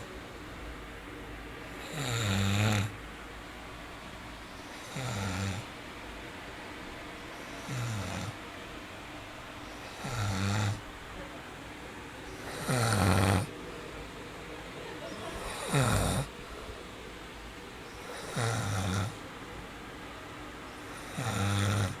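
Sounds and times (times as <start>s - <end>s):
loud rhythmic snoring: 1.7s - 3.0s, 4.6s - 5.8s, 7.3s - 8.4s, 9.6s - 10.9s, 12.4s - 13.6s, 15.2s - 16.4s, 17.9s - 19.2s, 20.7s - 22.0s.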